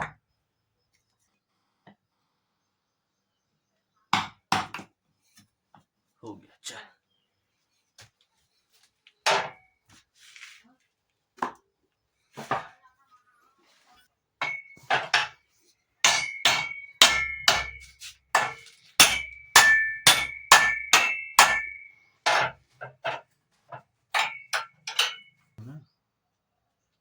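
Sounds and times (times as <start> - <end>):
hammer blows on metal: 16.1 - 21.9.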